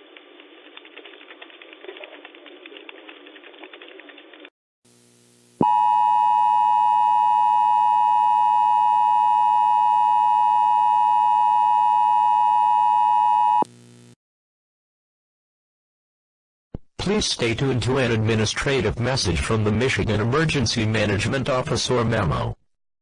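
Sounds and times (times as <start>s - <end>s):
harsh static noise: 0.0s - 14.2s
loud steady electronic tone: 5.6s - 14.2s.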